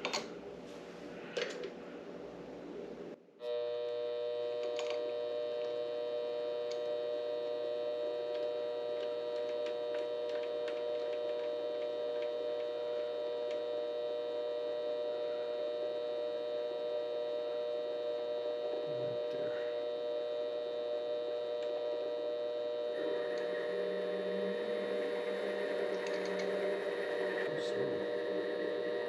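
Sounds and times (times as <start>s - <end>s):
lathe motor whining: 21.6s - 29.0s.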